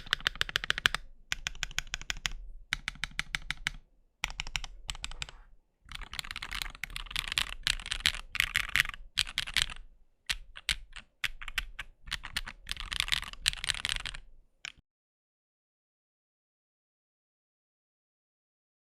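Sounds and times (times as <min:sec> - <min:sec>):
mechanical keyboard typing: 0:00.0 - 0:14.8.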